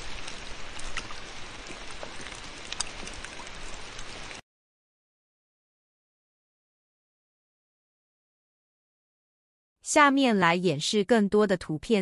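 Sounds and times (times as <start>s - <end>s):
rain hiss with drop ticks: 0.0s - 4.4s.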